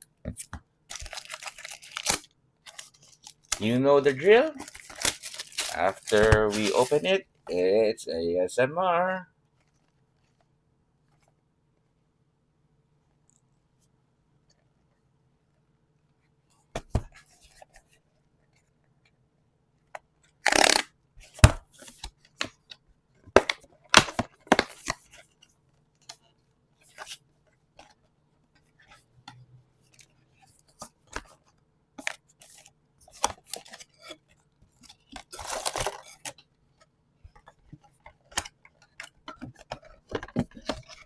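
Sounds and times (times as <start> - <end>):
packaging tearing and crinkling: 0.9 - 7.2, 20.5 - 20.8, 35.2 - 36.3.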